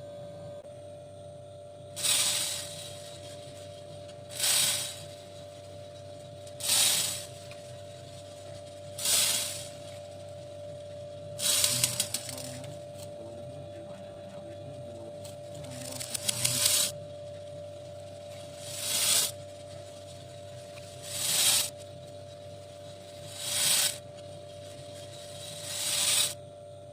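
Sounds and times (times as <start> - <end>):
steady hum: 0.0 - 26.9
beads pouring: 11.4 - 12.4.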